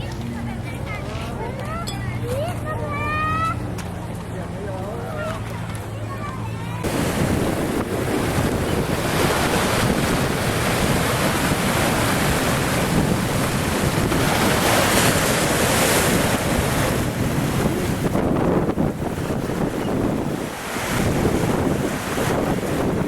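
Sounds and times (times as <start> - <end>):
waves washing against shore: 6.8 - 23.0
wind buffeting microphone: 6.8 - 23.0.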